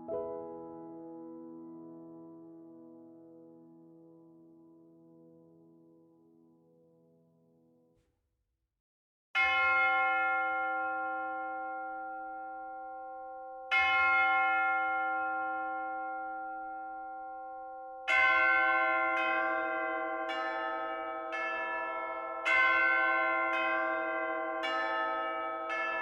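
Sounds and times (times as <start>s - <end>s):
church bells ringing: 9.4s - 26.0s
single church bell striking: 9.4s - 26.0s.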